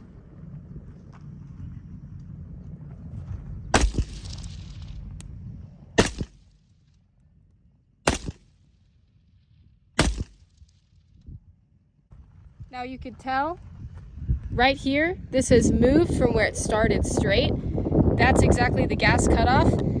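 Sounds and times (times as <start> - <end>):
rifle shots with echo: 3.7 - 5.0, 6.0 - 6.7, 8.0 - 8.9, 10.0 - 10.8.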